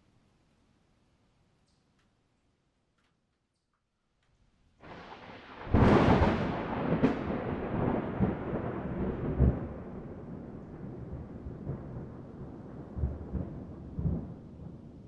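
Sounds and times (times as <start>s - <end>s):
thunder rumbling and cracking: 4.8s - 15.0s.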